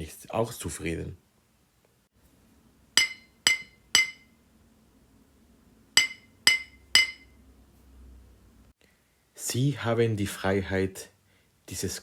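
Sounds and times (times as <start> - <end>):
high ringing clinks: 3.0 - 4.4, 6.0 - 7.4.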